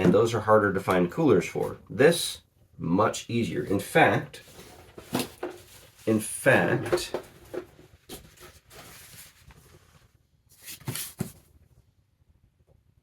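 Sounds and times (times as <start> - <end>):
rustling packaging: 4.4 - 11.5.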